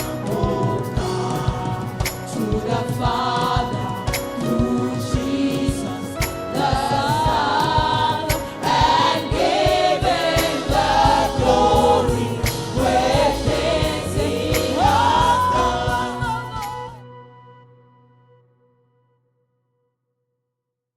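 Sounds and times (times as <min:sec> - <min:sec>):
gospel choir singing: 0:00.0 - 0:17.0
instrumental accompaniment with beat: 0:00.0 - 0:17.0.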